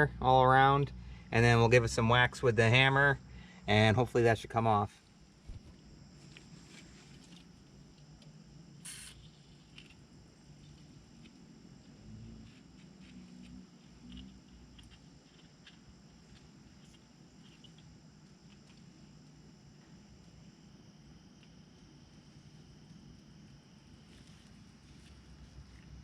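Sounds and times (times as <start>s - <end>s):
faint high whine: 0.0s - 26.0s
small ticks and rustles: 4.9s - 26.0s
aerosol spray hiss: 8.8s - 9.6s.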